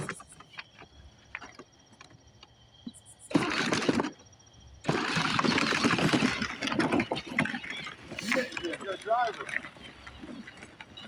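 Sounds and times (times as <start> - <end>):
toy electric drive motor: 4.8 - 7.5.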